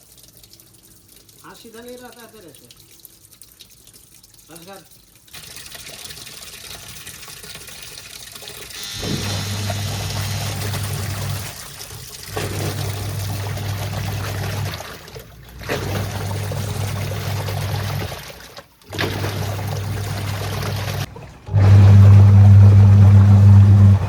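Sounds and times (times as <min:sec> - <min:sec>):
water sloshing and splashing: 0:00.0 - 0:24.0
washing machine motor humming: 0:08.7 - 0:24.0.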